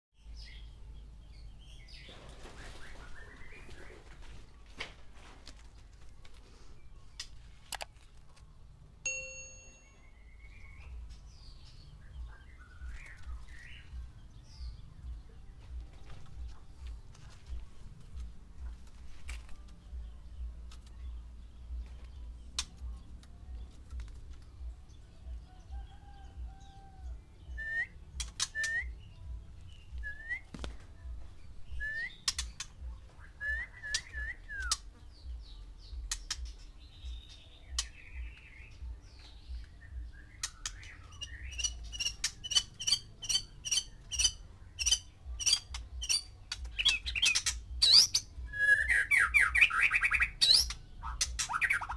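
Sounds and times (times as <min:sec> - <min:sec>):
birds calling with clicks and chirps: 0:00.1 - 0:51.9
harsh repeated bird calls: 0:31.7 - 0:51.9.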